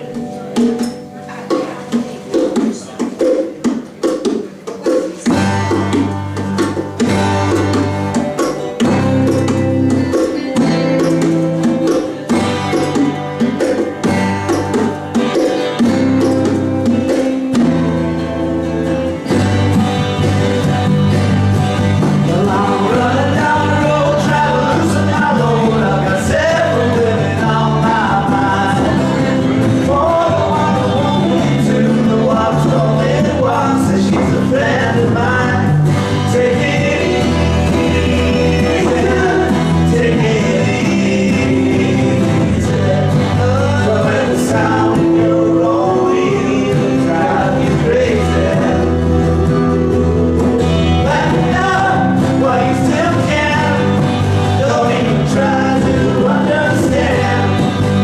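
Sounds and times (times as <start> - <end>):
folk band playing: 0.0 - 58.0
person singing: 4.9 - 58.0.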